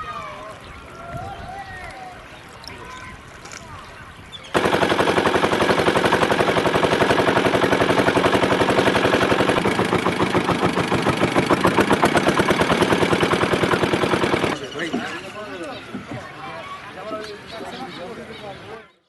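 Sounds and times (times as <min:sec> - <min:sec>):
boat engine chugging: 0:04.6 - 0:16.2.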